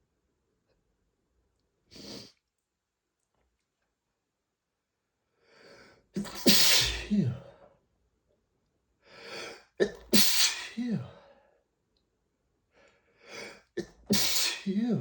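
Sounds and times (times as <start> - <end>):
man sneezing: 6.2 - 7.6, 9.8 - 11.2, 13.4 - 15.0.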